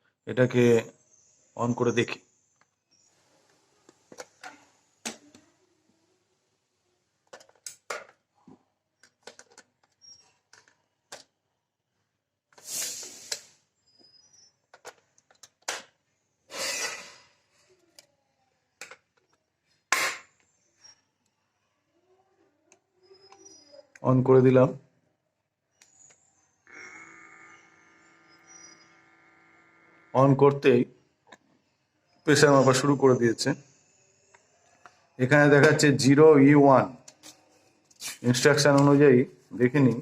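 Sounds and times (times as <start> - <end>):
plastic clicks and knocks: 3.9 - 5.4, 7.2 - 11.4, 14.7 - 16.0.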